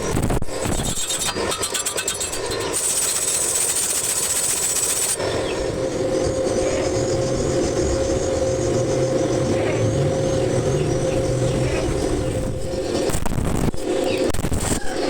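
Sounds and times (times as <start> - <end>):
motor hum with a tone: 0.0 - 15.0.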